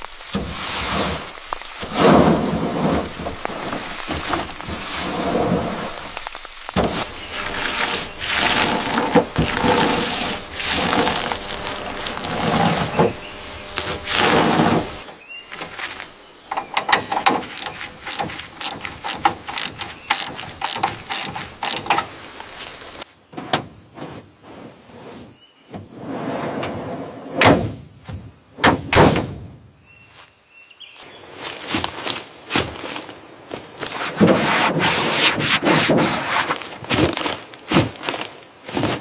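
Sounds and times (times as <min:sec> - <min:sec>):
rough noise: 0:00.0 - 0:27.6, 0:31.0 - 0:39.0
mechanical clicking and ratcheting: 0:16.6 - 0:22.0.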